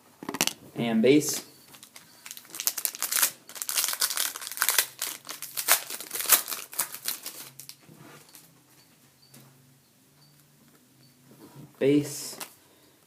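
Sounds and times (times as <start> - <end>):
foil wrapper crinkling: 1.7 - 8.4.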